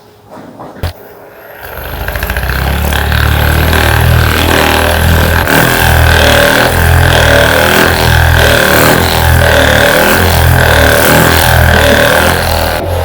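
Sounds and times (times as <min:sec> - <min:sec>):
small electric motor whining: 0:01.6 - 0:13.0.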